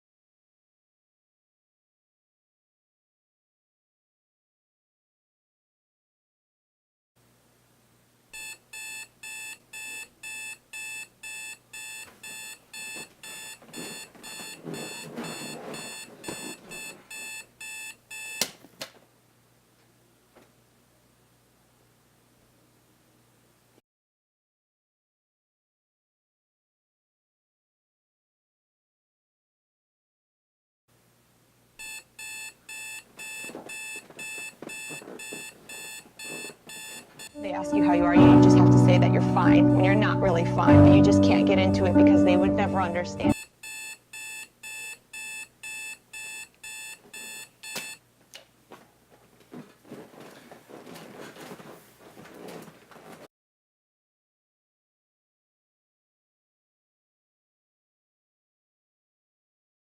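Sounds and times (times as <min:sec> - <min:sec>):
electronic alarm clock beeping: 0:08.4 - 0:18.5, 0:31.8 - 0:37.4, 0:43.3 - 0:48.0
rustling: 0:12.0 - 0:17.5, 0:33.0 - 0:37.3, 0:48.2 - 0:53.3
sharp click of alarm switch: 0:18.2 - 0:18.6, 0:47.6 - 0:48.0.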